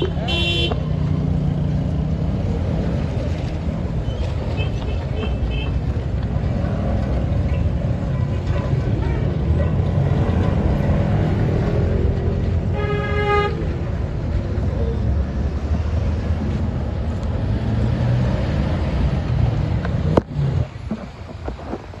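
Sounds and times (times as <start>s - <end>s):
car horn toot: 0.0s - 0.8s
street traffic rumbling: 0.0s - 22.0s.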